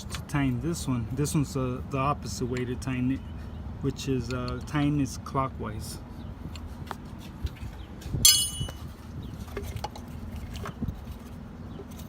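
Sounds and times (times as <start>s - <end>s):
loud ringing metallic clang: 8.3s - 8.8s
wrench clinking on metal: 8.3s - 8.8s.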